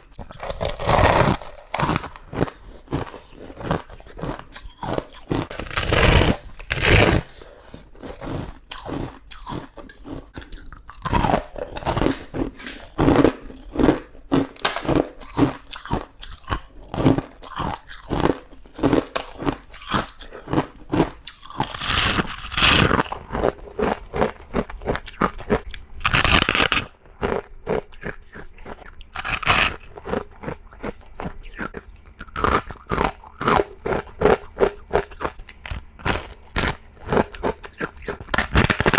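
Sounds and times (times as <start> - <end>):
person crunching ice: 21.5 - 38.9.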